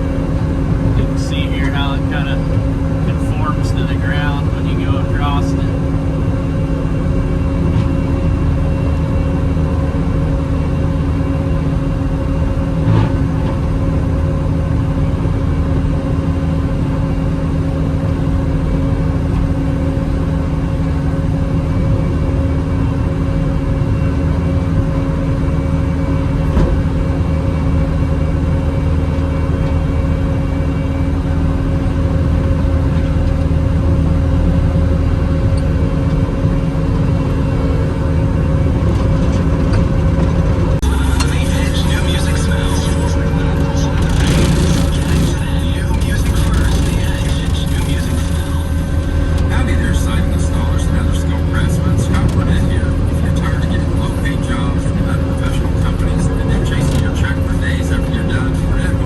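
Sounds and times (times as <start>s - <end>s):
diesel engine under load: 0.0s - 59.0s
rotary cutter mowing grass: 40.9s - 49.8s.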